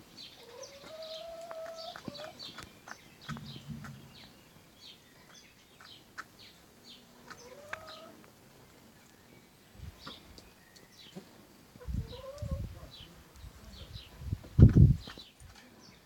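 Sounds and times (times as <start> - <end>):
chickens clucking: 0.3 - 8.4, 11.1 - 13.2.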